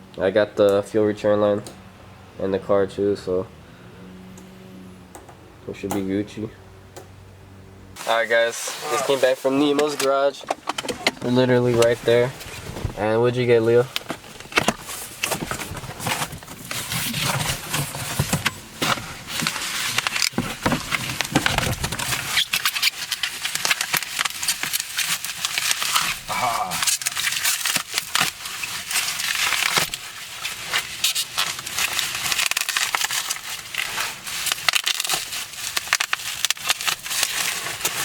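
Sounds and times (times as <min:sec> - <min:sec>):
packaging crinkling: 0:14.9 - 0:38.0.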